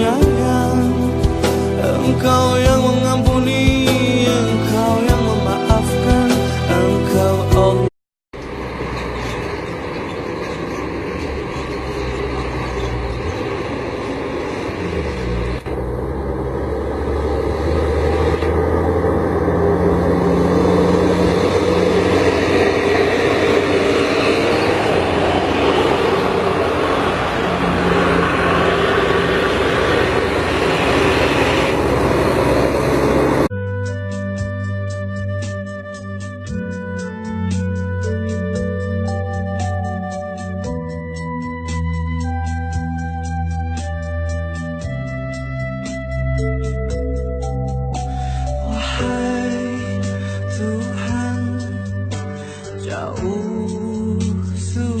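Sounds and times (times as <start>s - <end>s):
truck engine running: 8.4s - 52.1s.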